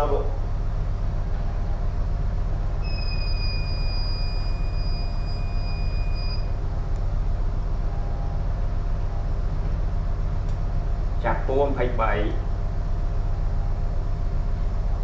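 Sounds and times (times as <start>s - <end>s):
ship machinery hum: 0.0s - 15.0s
high steady tone: 2.7s - 9.4s.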